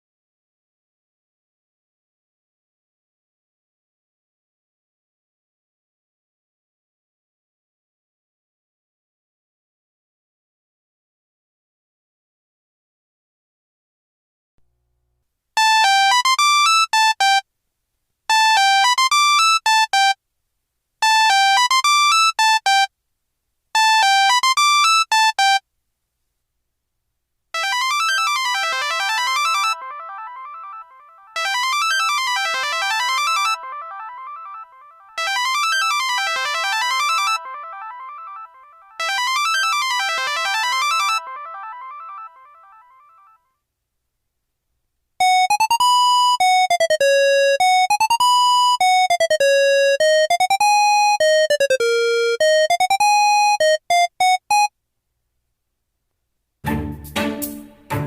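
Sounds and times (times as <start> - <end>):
phone ringtone melody: 15.6 - 17.4, 18.3 - 20.2, 21.0 - 22.9, 23.8 - 25.6, 27.6 - 43.4, 45.2 - 54.7.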